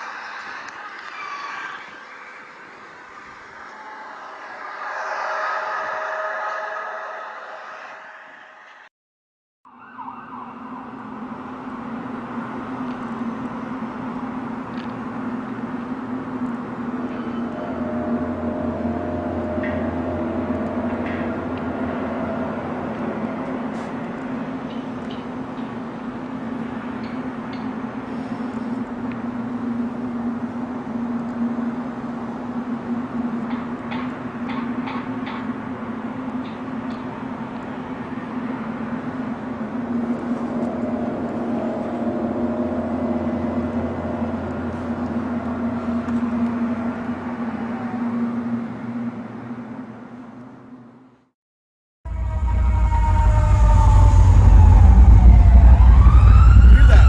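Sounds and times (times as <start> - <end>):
broad rumbling noise: 0.0 - 8.9, 11.0 - 49.1, 52.1 - 57.0
low droning hum with hiss: 11.3 - 33.5, 37.8 - 47.4.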